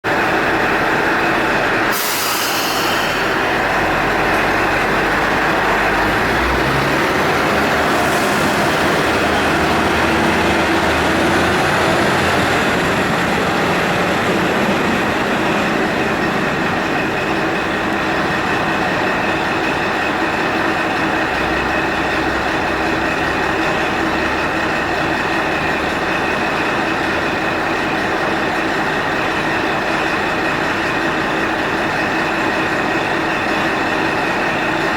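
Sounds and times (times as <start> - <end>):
diesel railcar engine: 0.0 - 34.9
short hiss: 1.9 - 3.3.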